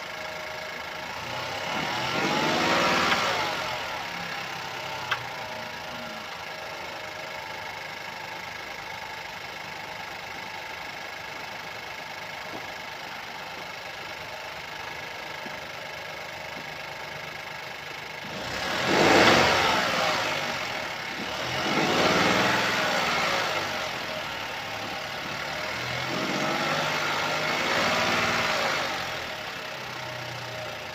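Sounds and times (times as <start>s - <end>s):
car engine idling and revving: 0.0s - 30.9s.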